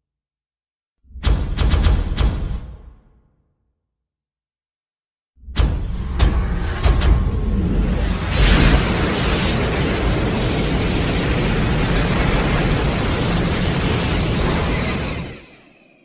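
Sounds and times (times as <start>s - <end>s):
loud steady rushing noise: 5.8s - 15.7s.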